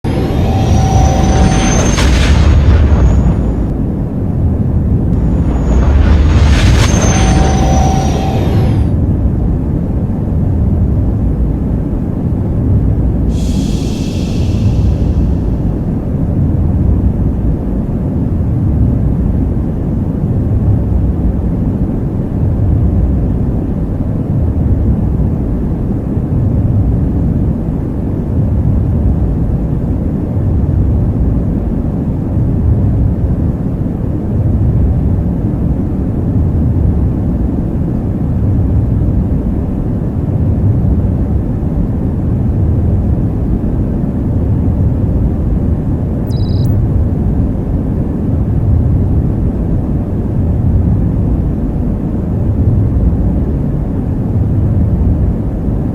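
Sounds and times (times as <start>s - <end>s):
deep engine rumble: 13.3s - 17.4s.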